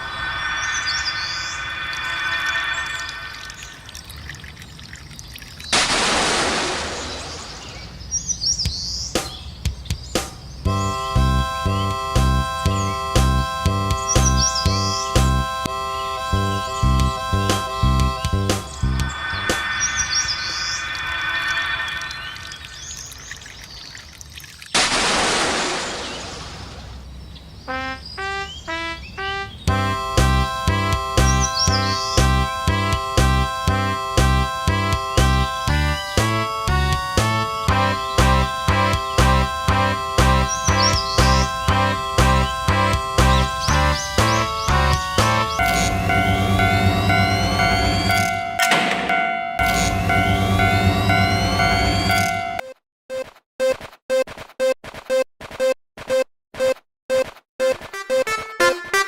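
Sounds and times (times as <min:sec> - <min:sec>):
gush of water: 0:01.6 - 0:07.7, 0:20.4 - 0:26.9
sustained electronic tones: 0:36.3 - 0:52.8.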